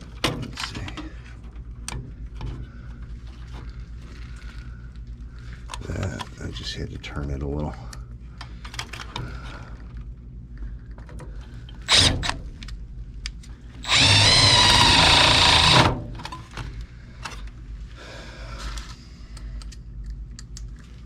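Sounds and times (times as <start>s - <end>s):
power driver driving screw: 11.9s - 12.4s, 13.8s - 16.0s.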